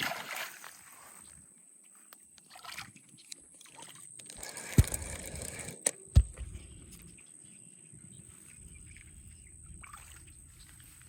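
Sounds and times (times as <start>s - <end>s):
phone handling rustling: 4.2s - 6.6s
sharp dull thumps: 4.7s - 6.8s.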